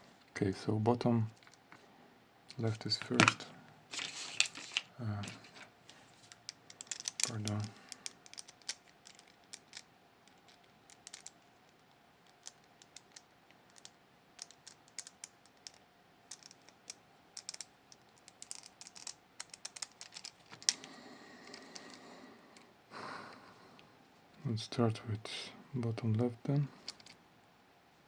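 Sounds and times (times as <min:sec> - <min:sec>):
metal lock parts clicking: 0:06.4 - 0:16.8, 0:17.4 - 0:20.8.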